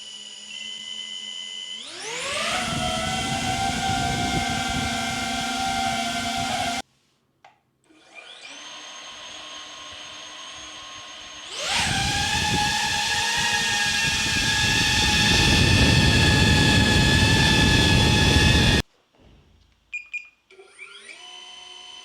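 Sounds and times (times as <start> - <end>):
drone motors whining: 0.0 - 6.8, 11.4 - 18.8.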